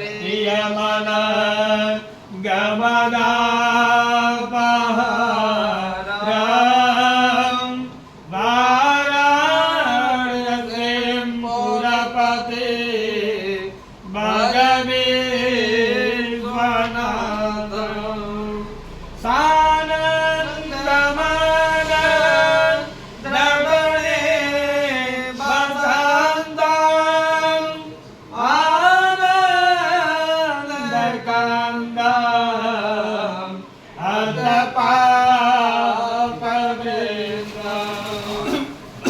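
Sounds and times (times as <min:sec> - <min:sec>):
person singing a hymn: 0:00.0 - 0:39.0.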